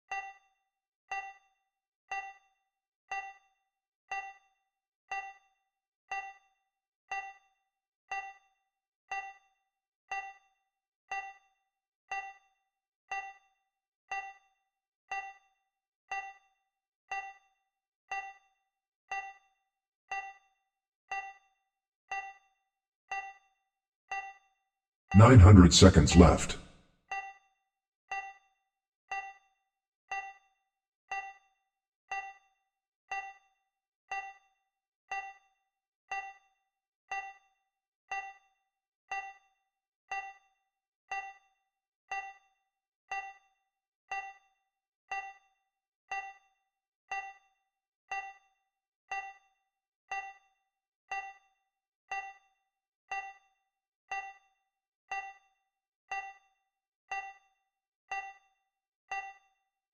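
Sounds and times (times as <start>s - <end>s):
timer ticking: 25.2s - 26.6s.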